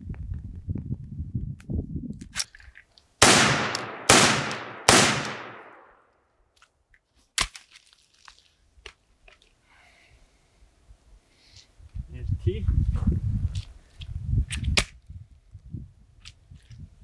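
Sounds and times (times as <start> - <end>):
rifle shots echoing: 3.2 - 5.9.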